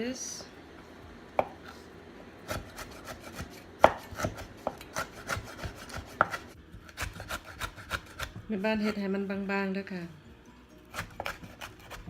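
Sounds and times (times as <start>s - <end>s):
knife chopping on cutting board: 2.5s - 9.0s, 10.9s - 12.0s.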